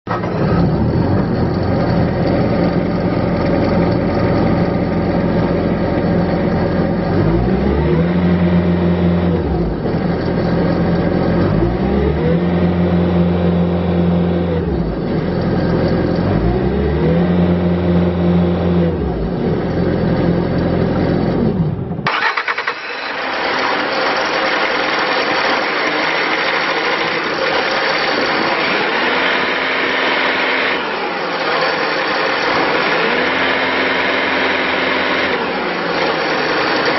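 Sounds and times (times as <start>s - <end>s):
diesel engine revving: 0.1s - 36.9s.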